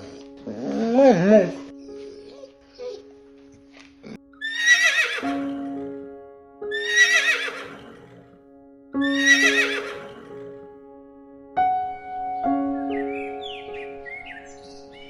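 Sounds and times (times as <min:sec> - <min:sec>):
background music with held notes: 0:00.0 - 0:15.0
horse whinnying: 0:04.4 - 0:05.7, 0:06.7 - 0:08.4, 0:09.0 - 0:10.6.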